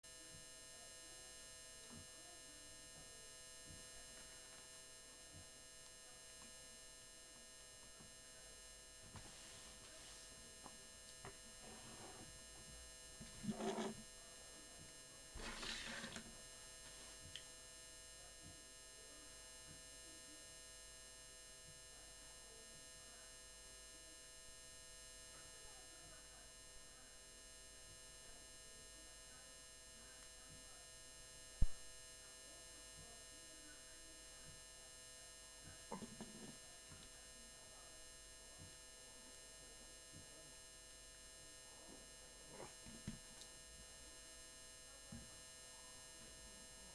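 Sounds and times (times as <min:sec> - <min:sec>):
electrical hum: 0:00.1 - 0:18.7.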